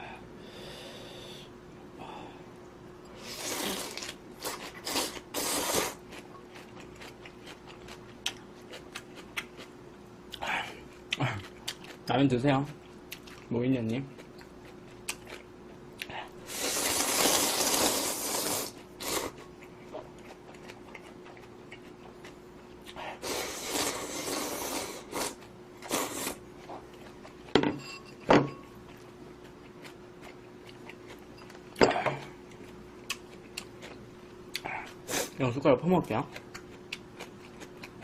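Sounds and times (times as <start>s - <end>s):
faint steady hum: 0.0s - 38.0s
slurping noodles and broth: 3.2s - 6.0s, 16.5s - 19.4s, 23.0s - 26.4s.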